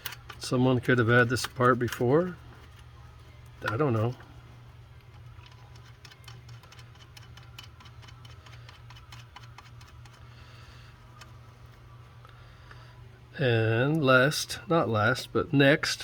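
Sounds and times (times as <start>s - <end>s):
small metal parts clicking: 0.0s - 2.9s, 5.0s - 10.2s
steady low hum: 0.0s - 16.0s.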